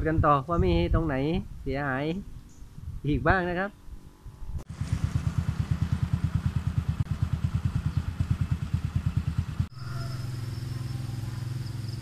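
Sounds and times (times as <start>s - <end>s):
small motorcycle engine running: 4.7s - 12.0s.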